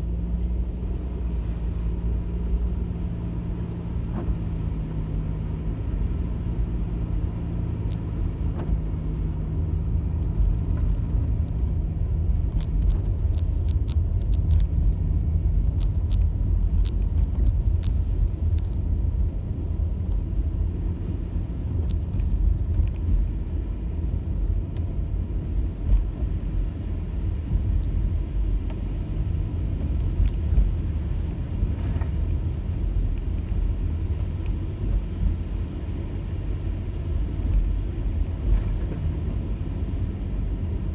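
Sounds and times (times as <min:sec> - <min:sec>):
car road and engine rumble: 0:00.0 - 0:40.9
light sharp clicks: 0:07.8 - 0:08.8, 0:10.2 - 0:11.7, 0:12.3 - 0:19.0, 0:21.8 - 0:23.1, 0:29.8 - 0:30.9.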